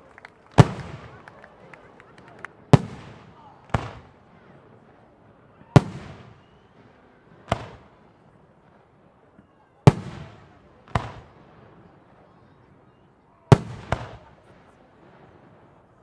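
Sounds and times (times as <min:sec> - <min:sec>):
fireworks bursting with bangs: 0:00.5 - 0:01.4, 0:02.4 - 0:05.0, 0:05.8 - 0:08.0, 0:09.9 - 0:11.8, 0:13.5 - 0:15.8.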